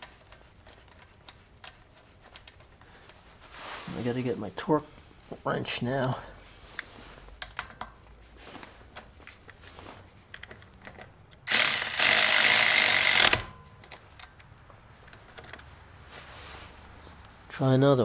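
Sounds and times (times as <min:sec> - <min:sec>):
cordless ratchet motor running: 0:11.5 - 0:13.5.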